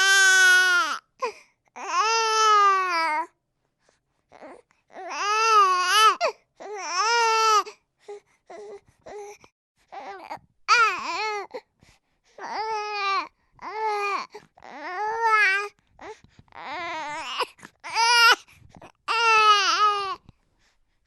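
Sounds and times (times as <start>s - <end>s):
baby crying: 0.0s - 1.0s, 4.4s - 7.7s, 10.0s - 11.6s, 12.4s - 15.8s, 16.6s - 18.4s, 19.0s - 20.2s.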